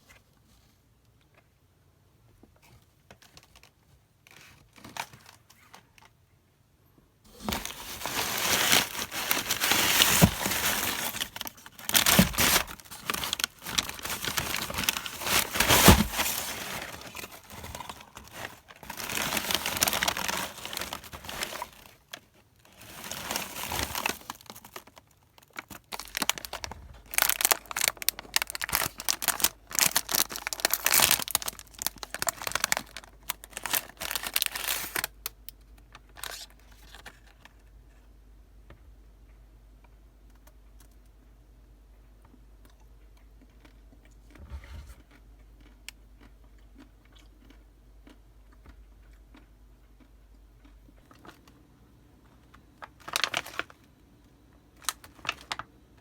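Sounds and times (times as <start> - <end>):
packaging crinkling: 7.3 - 37.5, 52.8 - 53.9, 54.8 - 55.7.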